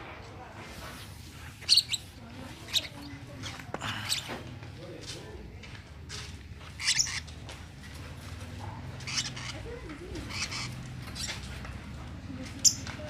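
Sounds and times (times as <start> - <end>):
birds chirping high calls: 1.6 - 4.4, 6.7 - 7.4, 8.9 - 11.6, 12.6 - 12.9.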